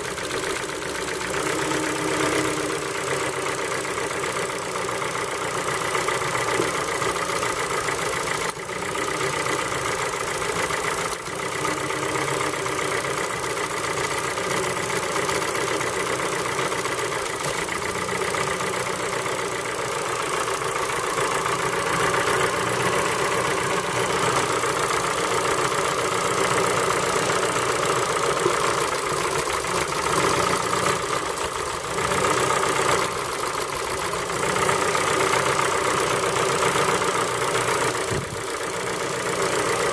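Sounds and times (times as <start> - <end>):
car engine idling with a knock: 37.2 - 38.9.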